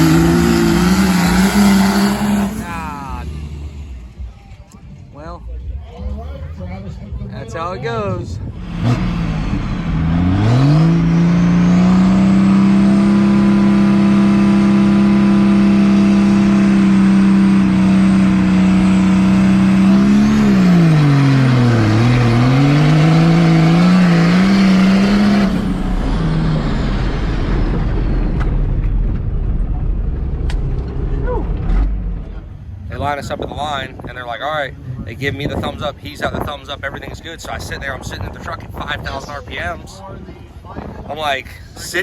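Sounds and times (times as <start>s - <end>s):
diesel engine revving: 0.0s - 4.3s, 8.4s - 35.8s.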